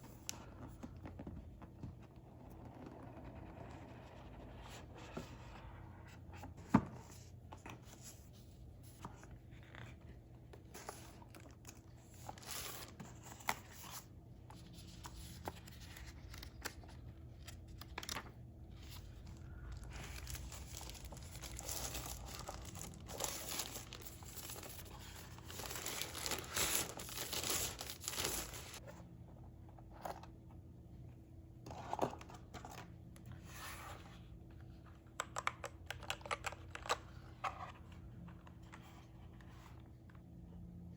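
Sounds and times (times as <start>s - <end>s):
plastic and paper crinkling: 14.8s - 28.8s.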